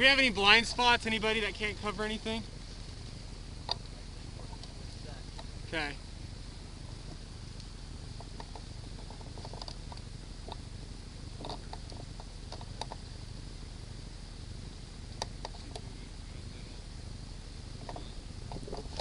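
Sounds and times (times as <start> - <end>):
steady low rumble: 0.0 - 19.0
faint clicks and rustles: 2.5 - 5.7, 6.8 - 13.2, 15.1 - 16.1, 17.7 - 19.0.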